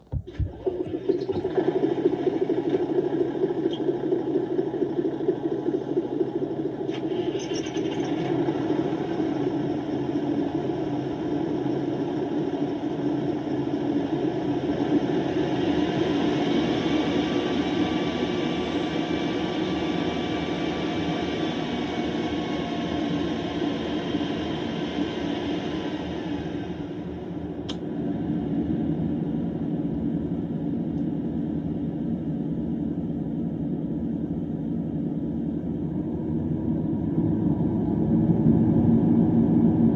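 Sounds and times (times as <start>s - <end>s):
diesel engine running with whine: 1.6s - 29.6s.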